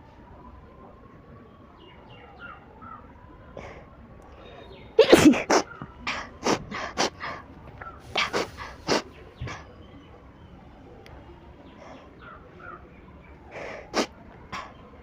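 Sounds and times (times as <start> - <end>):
person sneezing: 5.0 - 7.2, 13.6 - 14.1.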